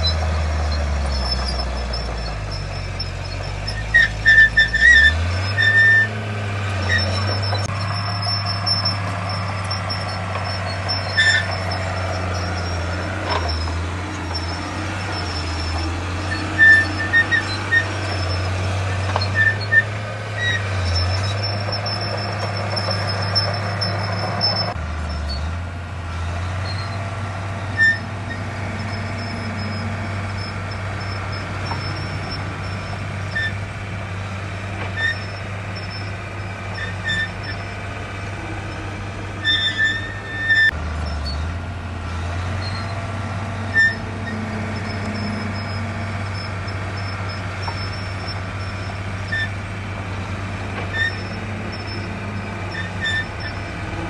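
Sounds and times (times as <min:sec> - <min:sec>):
metallic squeaks and clanks: 0:00.0 - 0:25.6, 0:26.2 - 0:54.0
heavy diesel machinery engine: 0:00.0 - 0:54.0.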